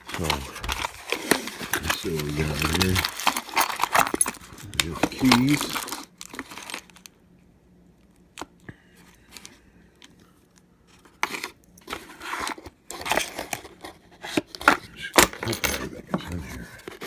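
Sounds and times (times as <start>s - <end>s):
packing material crinkling: 0.0s - 7.1s.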